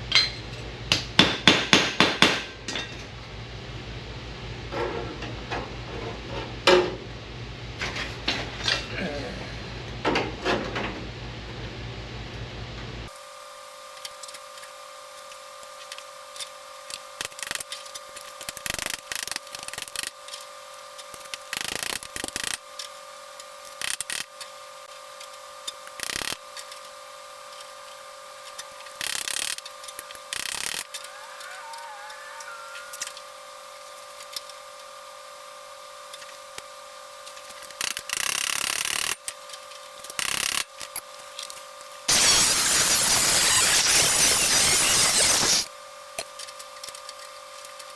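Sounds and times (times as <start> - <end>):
hand tools scraping sheet metal: 42.1 - 45.7
steady hum: 42.1 - 45.8.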